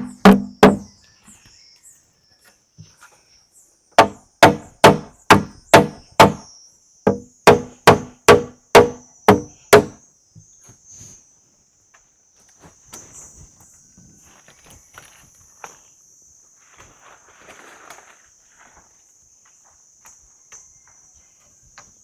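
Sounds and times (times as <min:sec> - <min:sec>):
hammer blows on wood: 0:00.0 - 0:00.9, 0:04.0 - 0:06.4, 0:07.1 - 0:10.0
insects buzzing: 0:00.0 - 0:01.8, 0:03.5 - 0:11.2.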